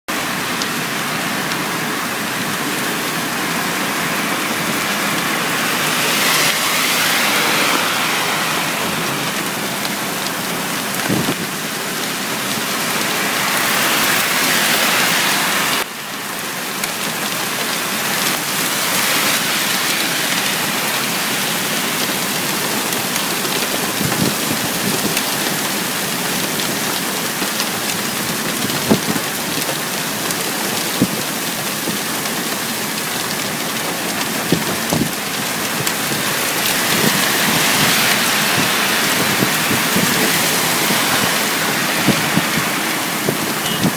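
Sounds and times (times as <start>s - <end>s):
heavy rain pouring: 0.1s - 43.9s.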